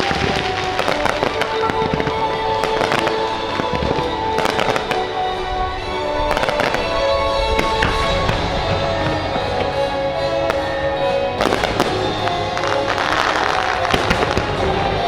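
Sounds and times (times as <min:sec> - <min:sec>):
fireworks bangs and crackles: 0:00.0 - 0:15.0
orchestral music playing loudly: 0:00.0 - 0:15.0.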